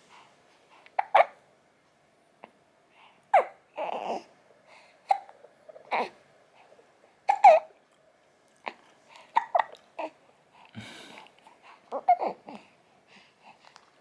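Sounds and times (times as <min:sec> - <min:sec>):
baby hiccupping: 0:07.3 - 0:07.7, 0:09.3 - 0:09.8.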